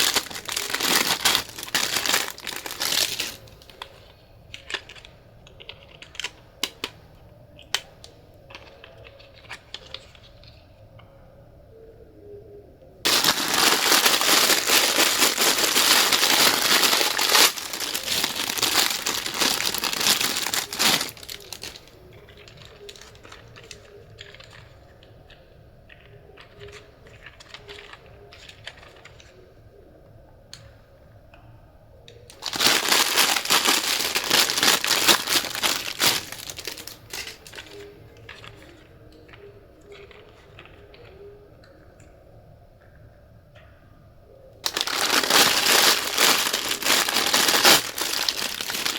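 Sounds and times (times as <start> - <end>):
wrapping crinkling: 0.0 - 6.9, 13.1 - 29.3, 32.3 - 41.1, 44.6 - 48.9.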